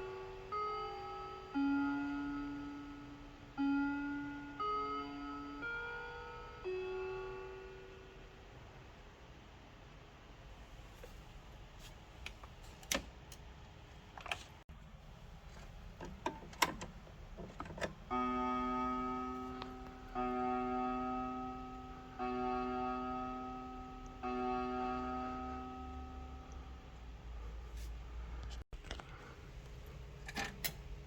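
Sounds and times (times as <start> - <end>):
clock striking: 16.1 - 26.8.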